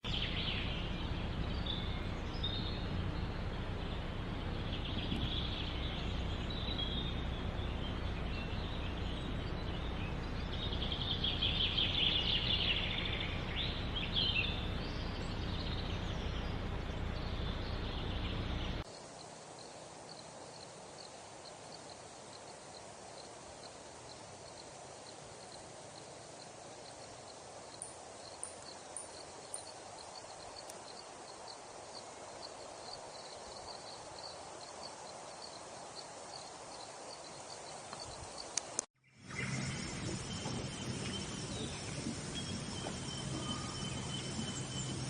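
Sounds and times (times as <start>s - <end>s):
outdoor background noise: 0.0s - 45.0s
gulls calling: 38.6s - 45.0s.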